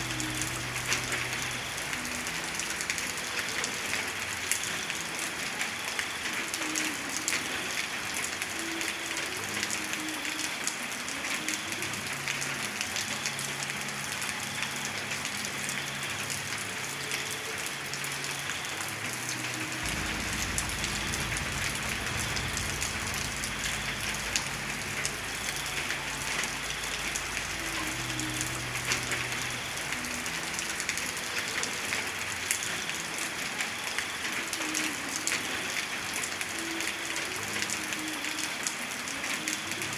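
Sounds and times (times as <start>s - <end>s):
heavy rain patter: 0.0s - 39.9s
low rumble: 19.8s - 26.0s.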